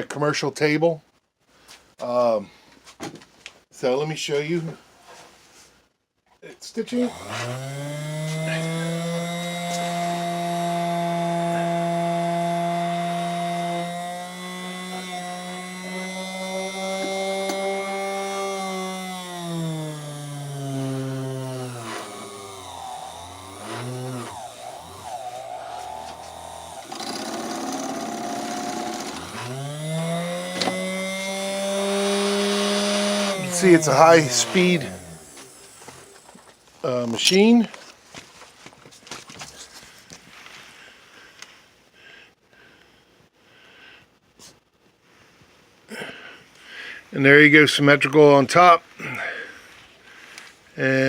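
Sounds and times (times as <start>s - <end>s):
sewing machine whining: 7.0s - 36.6s.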